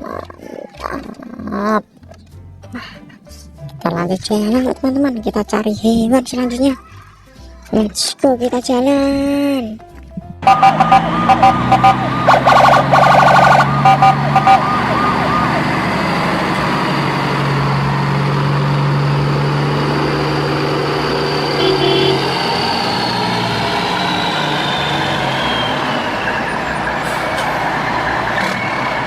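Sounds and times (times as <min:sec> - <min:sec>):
engine-like hum: 0:03.6 - 0:29.0
electronic beeps: 0:10.4 - 0:15.6
siren wailing: 0:10.4 - 0:18.3, 0:18.9 - 0:27.0.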